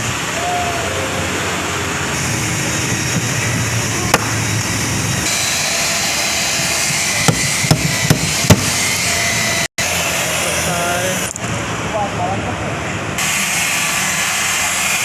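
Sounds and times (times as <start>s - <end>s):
hammer striking metal: 7.2s - 8.9s.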